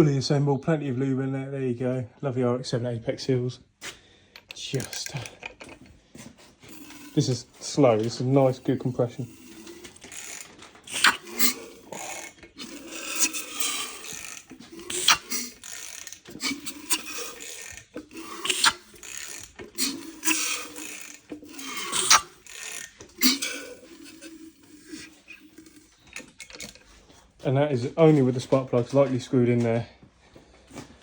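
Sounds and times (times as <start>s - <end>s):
engine turning clicks: 4.4s - 5.9s, 6.7s - 26.9s.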